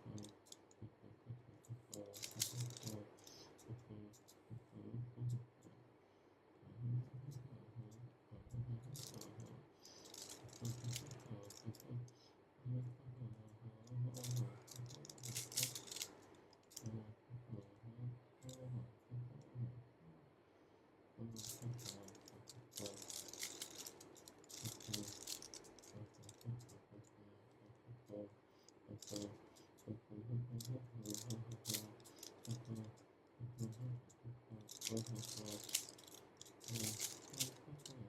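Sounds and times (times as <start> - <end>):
puzzle cube clicking and rattling: 1.9 - 4.3, 8.9 - 11.8, 14.1 - 16.9, 21.4 - 26.7, 29.0 - 29.6, 30.6 - 33.0, 34.6 - 38.0.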